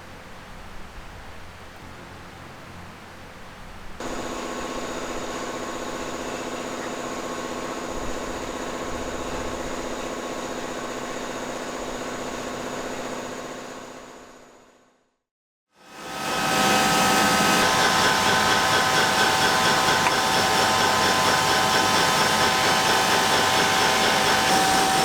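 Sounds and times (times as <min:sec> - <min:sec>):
machine motor humming and whining: 0:15.9 - 0:25.0.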